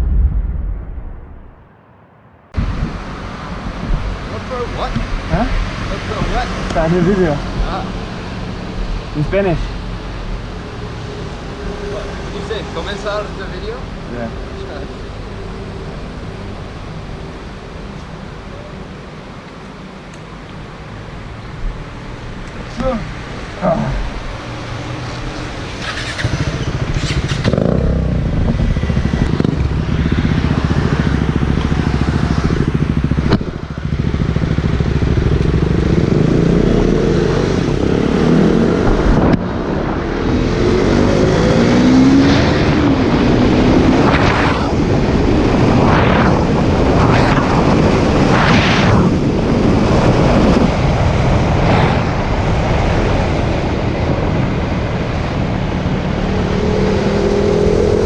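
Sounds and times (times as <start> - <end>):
motorcycle engine: 22.7 - 53.9.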